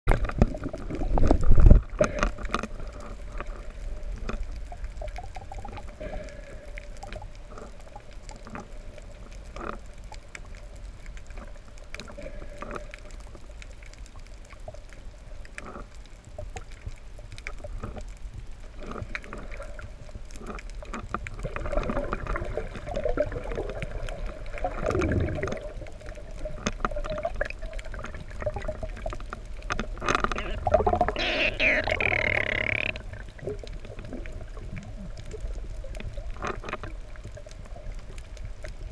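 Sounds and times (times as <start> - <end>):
mid-pitched underwater hum: 0.1 - 38.9
rush of water: 18.7 - 38.9.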